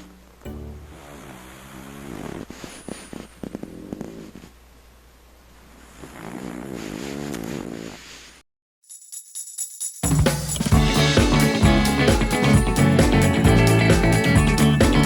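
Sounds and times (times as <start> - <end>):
dog snoring: 0.9 - 4.6, 5.7 - 8.4
short clicking snorts: 6.1 - 8.0.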